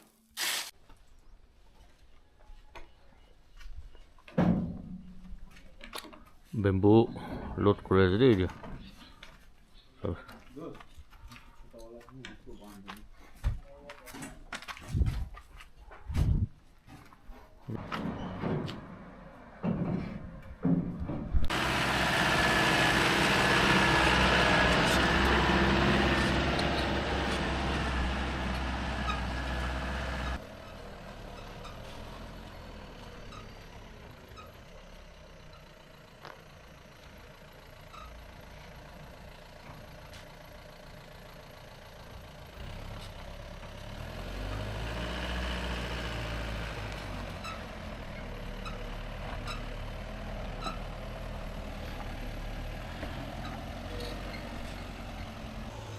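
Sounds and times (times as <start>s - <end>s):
truck engine running: 21.5s - 55.9s.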